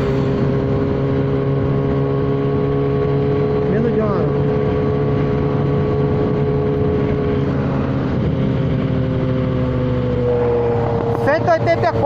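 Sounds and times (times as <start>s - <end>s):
motorcycle engine at high revs: 0.0s - 12.0s.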